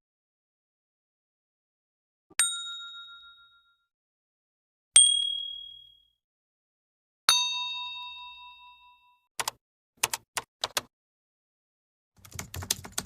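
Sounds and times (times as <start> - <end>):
bell-like ding: 2.3 - 3.9, 5.0 - 6.2, 7.3 - 9.3.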